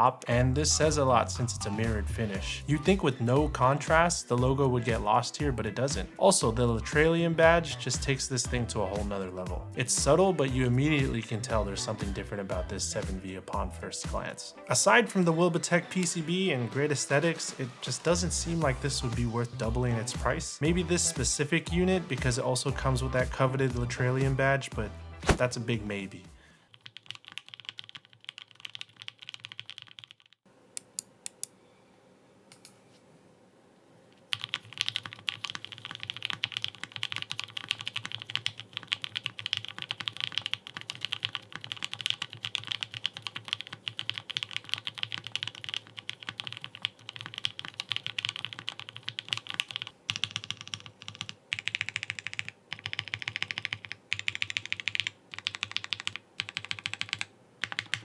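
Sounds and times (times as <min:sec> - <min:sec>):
typing on mechanical keyboard: 0:26.7 - 0:30.4, 0:34.3 - 0:58.0.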